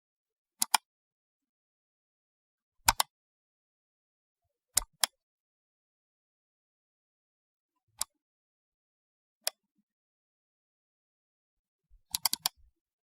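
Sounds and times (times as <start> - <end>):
computer mouse button clicks: 2.9 - 3.1, 12.1 - 12.6.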